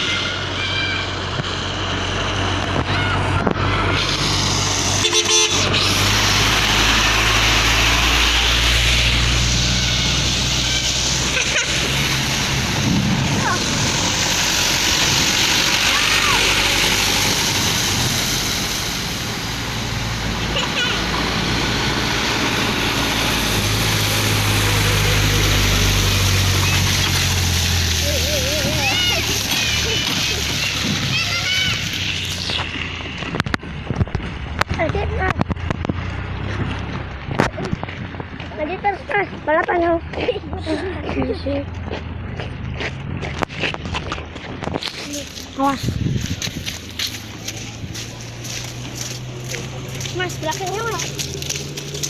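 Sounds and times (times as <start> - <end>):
truck passing close: 0.0 - 52.0
two-tone musical horn blast: 4.9 - 6.2.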